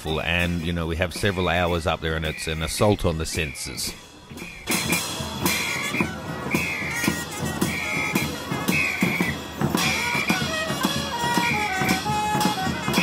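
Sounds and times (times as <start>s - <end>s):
steady drum beat: 0.0s - 13.0s.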